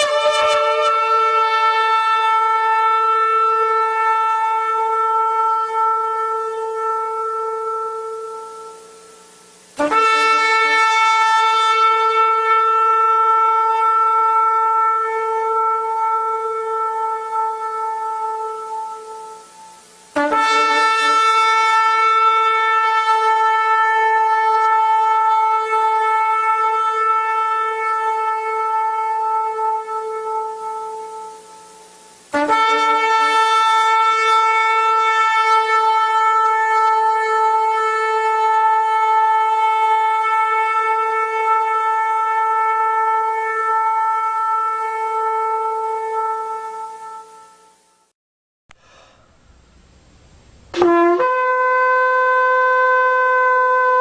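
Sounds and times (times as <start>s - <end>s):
shofar blasts: 0.0s - 48.1s, 50.8s - 54.0s.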